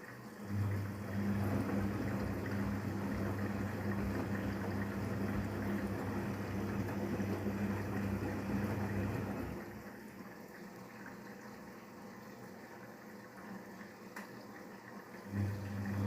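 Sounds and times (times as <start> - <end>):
washing machine low hum: 0.0 - 16.0
water rushing in washing machine: 0.0 - 16.0.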